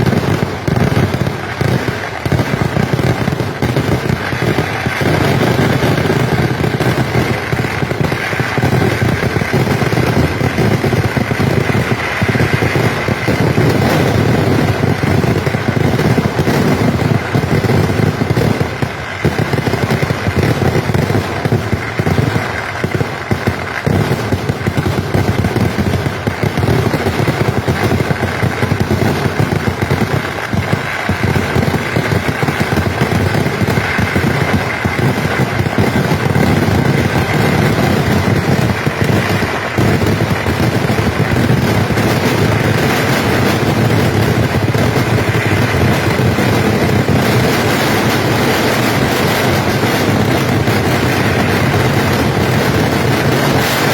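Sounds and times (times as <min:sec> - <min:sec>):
fireworks barrage: 0:00.0 - 0:53.9.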